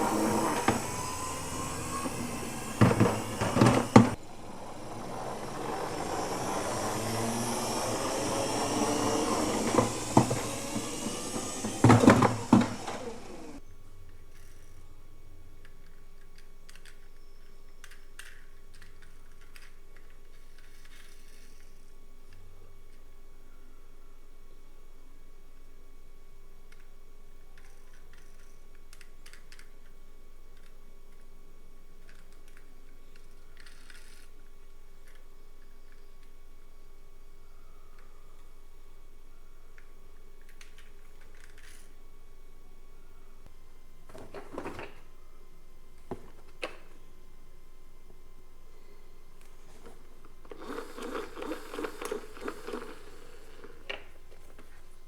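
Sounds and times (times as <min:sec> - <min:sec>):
faint steady hum: 0:00.0 - 0:55.0
toy cars clicking and tapping: 0:15.6 - 0:22.4, 0:27.5 - 0:30.0, 0:32.0 - 0:35.3, 0:39.8 - 0:42.0, 0:49.8 - 0:54.8.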